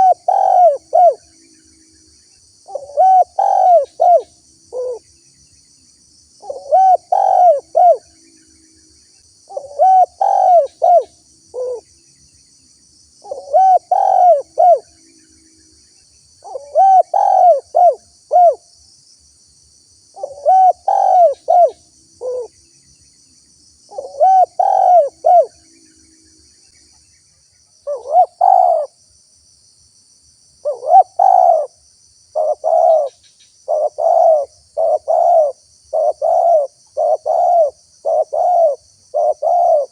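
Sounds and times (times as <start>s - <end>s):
dove cooing: 0.0s - 1.3s, 2.7s - 5.0s, 6.4s - 8.1s, 9.5s - 11.8s, 13.2s - 14.9s, 16.4s - 18.6s, 20.2s - 22.5s, 23.9s - 25.6s, 27.8s - 29.0s, 30.6s - 31.8s, 32.4s - 39.9s.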